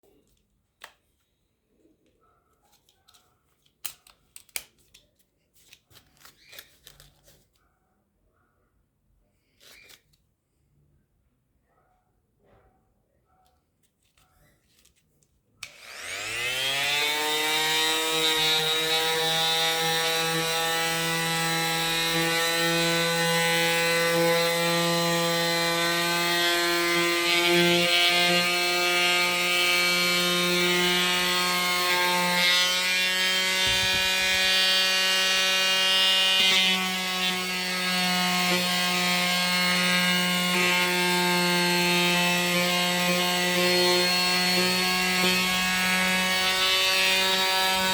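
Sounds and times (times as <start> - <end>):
oscillating multi-tool sanding wood: 15.7 - 47.9.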